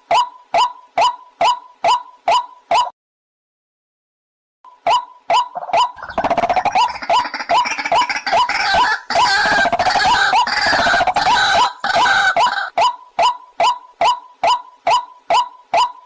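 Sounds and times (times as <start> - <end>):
waterhen croaking chorus: 4.9 - 16.0.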